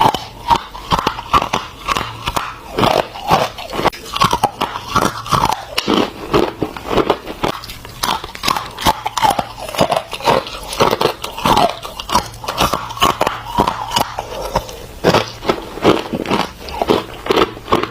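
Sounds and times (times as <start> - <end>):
ice being chewed: 0.0 - 17.9.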